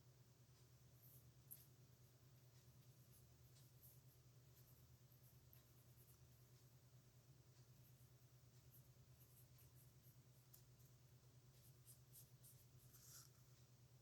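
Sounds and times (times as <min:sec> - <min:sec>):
steady low hum: 0:00.0 - 0:14.0
pen nib scratching on paper: 0:02.6 - 0:06.8, 0:07.6 - 0:13.5.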